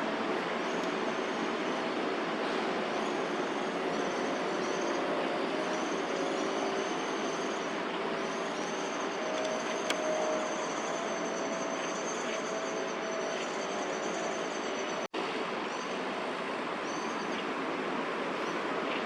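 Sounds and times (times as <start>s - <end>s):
road traffic hiss and rumble: 0.0s - 19.0s.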